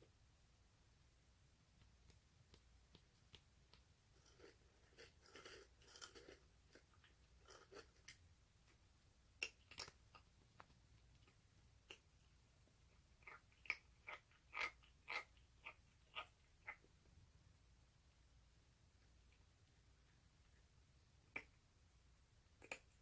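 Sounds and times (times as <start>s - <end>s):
kitten eating crunchily: 4.0s - 8.8s, 9.4s - 16.9s, 22.6s - 23.0s.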